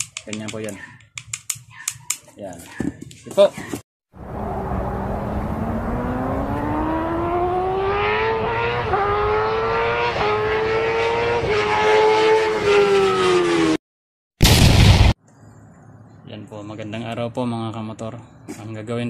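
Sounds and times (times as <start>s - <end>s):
small motorcycle engine revving: 4.2s - 13.8s.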